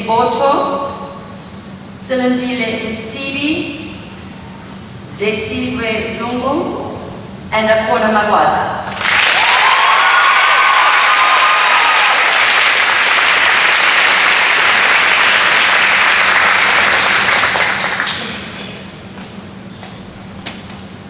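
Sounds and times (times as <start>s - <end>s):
audience applauding: 8.9s - 18.7s.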